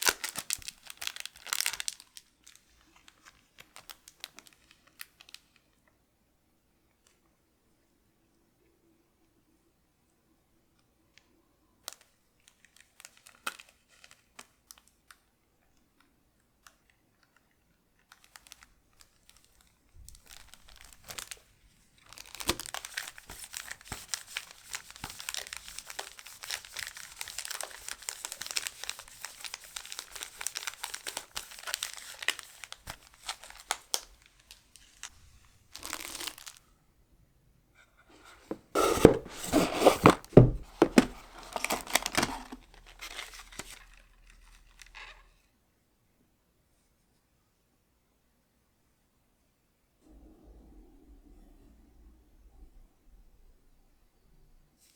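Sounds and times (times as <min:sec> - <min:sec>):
plastic packaging crinkling and tearing: 0:00.0 - 0:05.6, 0:11.9 - 0:15.0, 0:18.1 - 0:35.1, 0:35.7 - 0:36.6, 0:38.1 - 0:45.3.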